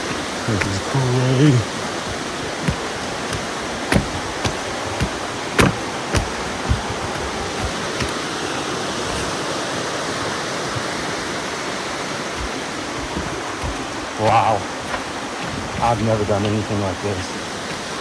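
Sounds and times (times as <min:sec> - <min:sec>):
sharp thumps: 0:00.0 - 0:08.4, 0:12.2 - 0:16.1
flowing water rushing: 0:00.0 - 0:18.0.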